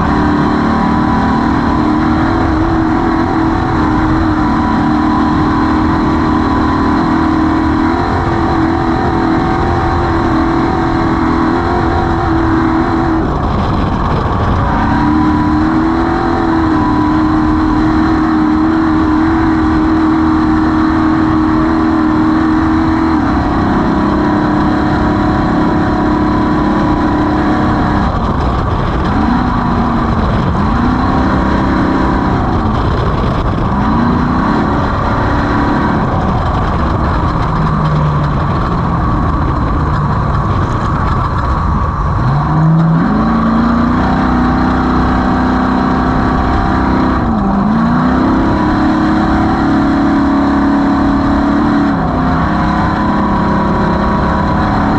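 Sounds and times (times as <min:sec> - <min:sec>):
race vehicle engine revving: 0:00.0 - 0:54.9
vehicle rattle and driving noise: 0:00.0 - 0:54.9.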